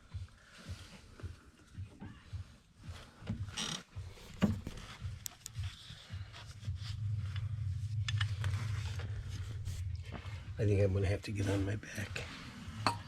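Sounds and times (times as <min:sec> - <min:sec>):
steady low hum: 0:03.9 - 0:13.0.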